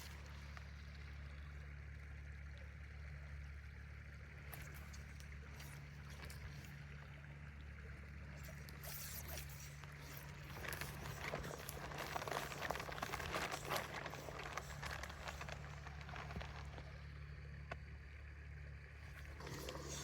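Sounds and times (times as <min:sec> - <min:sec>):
crackling rustles and crunches: 0:00.0 - 0:01.5, 0:08.1 - 0:17.9, 0:19.0 - 0:20.0.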